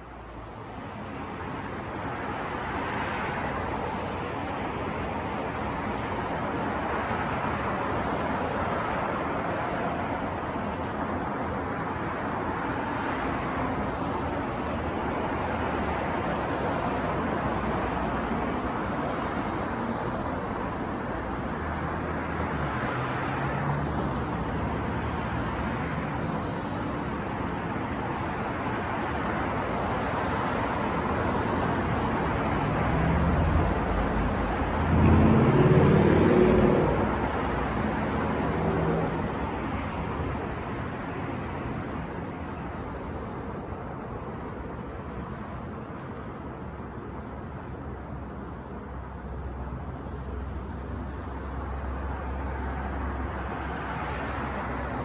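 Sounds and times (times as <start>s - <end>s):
passing cars: 0.0s - 55.0s
vehicle engine rumbling: 32.5s - 50.8s.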